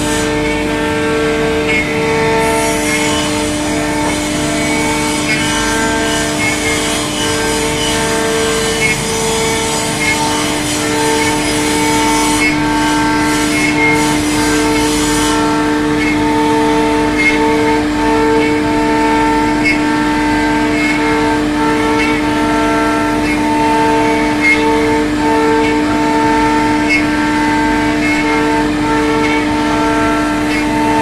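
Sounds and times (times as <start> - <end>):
router cutting wood: 0.0 - 31.0
router spindle whine: 0.0 - 31.0.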